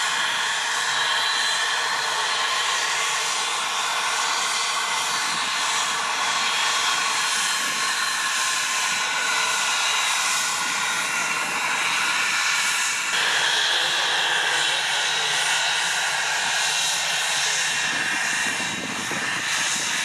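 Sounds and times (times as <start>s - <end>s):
jet engines whining: 0.0s - 20.0s.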